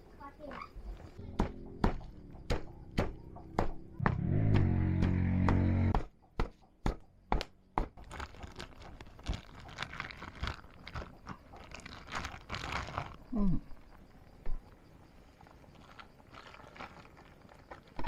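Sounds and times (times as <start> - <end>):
crunching and rustling: 7.8 - 14.1, 15.2 - 18.0.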